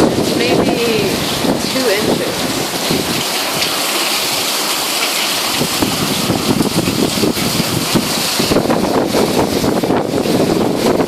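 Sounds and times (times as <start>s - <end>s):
heavy rain: 0.0s - 11.0s
water pouring from roof: 0.0s - 11.0s.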